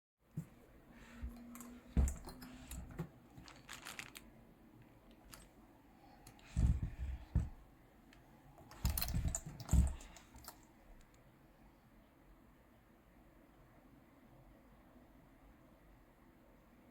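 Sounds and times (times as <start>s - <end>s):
handling clicks and light knocks: 0.4s - 4.2s, 6.2s - 11.2s
heavier knocking: 6.5s - 7.6s.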